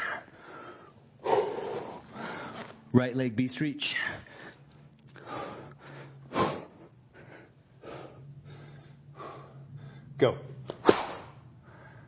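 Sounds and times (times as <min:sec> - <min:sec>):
person breathing hard: 0:00.0 - 0:02.8, 0:04.2 - 0:10.2, 0:11.5 - 0:12.0.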